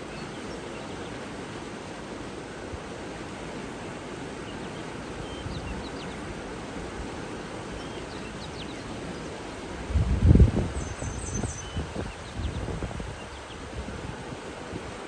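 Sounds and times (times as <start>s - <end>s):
flowing water rushing: 0.0s - 15.0s.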